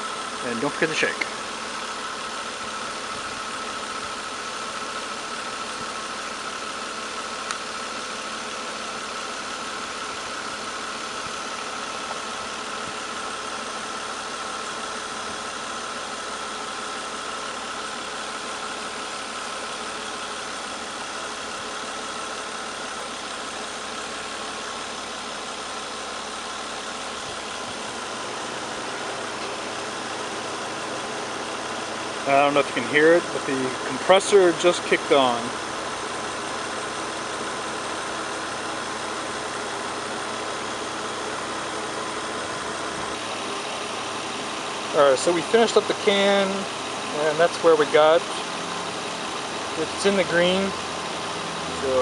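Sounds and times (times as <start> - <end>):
car engine idling: 0.0 - 52.0
steady whine: 0.0 - 52.0.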